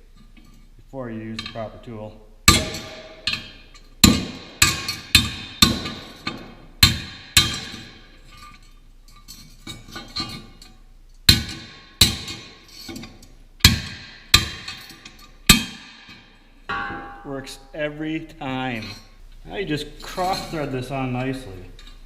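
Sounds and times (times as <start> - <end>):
hammer ringing on steel: 16.7 - 17.5.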